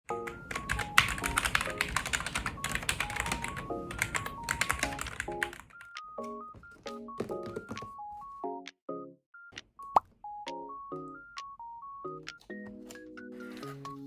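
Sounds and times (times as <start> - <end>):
rapid keyboard typing: 0.1 - 8.0
background music with melody: 0.1 - 14.0.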